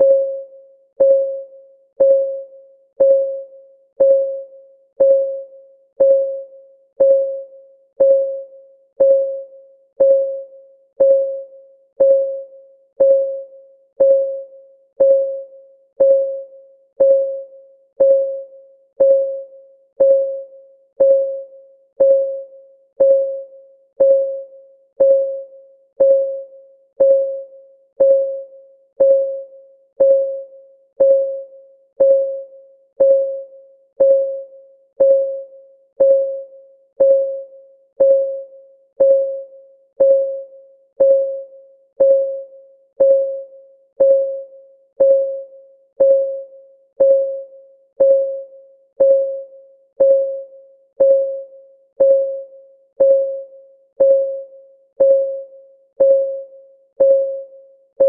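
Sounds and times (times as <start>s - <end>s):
timer ticking: 1.0s - 1.4s, 2.0s - 2.4s, 3.0s - 3.4s, 4.0s - 4.4s, 5.0s - 5.4s, 6.0s - 6.4s, 7.0s - 7.4s, 8.0s - 8.4s, 9.0s - 9.4s, 10.0s - 10.4s, 11.0s - 11.4s, 12.0s - 12.4s, 13.0s - 13.4s, 14.0s - 14.4s, 15.0s - 15.4s, 16.0s - 16.4s, 17.0s - 17.4s, 18.0s - 18.4s, 19.0s - 19.4s, 20.0s - 20.4s, 21.0s - 21.4s, 22.0s - 22.4s, 23.0s - 23.4s, 24.0s - 24.4s, 25.0s - 25.4s, 26.0s - 26.4s, 27.0s - 27.4s, 28.0s - 28.4s, 29.0s - 29.4s, 30.0s - 30.4s, 31.0s - 31.4s, 32.0s - 32.4s, 33.0s - 33.4s, 34.0s - 34.4s, 35.0s - 35.4s, 36.0s - 36.4s, 37.0s - 37.4s, 38.0s - 38.4s, 39.0s - 39.4s, 40.0s - 40.4s, 41.0s - 41.4s, 42.0s - 42.4s, 43.0s - 43.4s, 44.0s - 44.4s, 45.0s - 45.4s, 46.0s - 46.4s, 47.0s - 47.4s, 48.0s - 48.4s, 49.0s - 49.4s, 50.0s - 50.4s, 51.0s - 51.4s, 52.0s - 52.4s, 53.0s - 53.4s, 54.0s - 54.4s, 55.0s - 55.4s, 56.0s - 56.4s, 57.0s - 57.4s.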